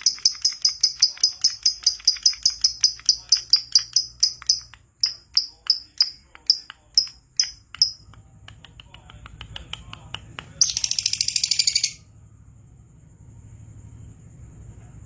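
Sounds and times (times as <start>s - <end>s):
lovebird chirping and trilling: 0.0s - 8.0s, 10.6s - 12.0s.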